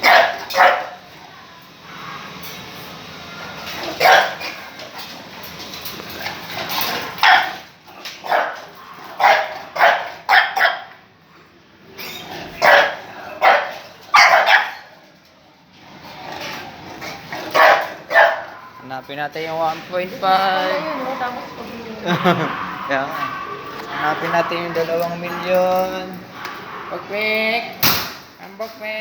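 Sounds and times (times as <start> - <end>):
dog barking: 0.0 - 1.1, 4.0 - 4.8, 7.2 - 7.6, 8.2 - 11.0, 12.6 - 14.9, 17.5 - 18.8, 26.3 - 27.1.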